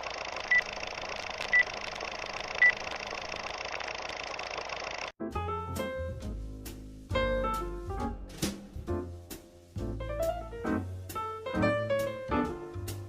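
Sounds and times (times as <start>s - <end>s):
piano-led jazz music: 5.2s - 13.0s.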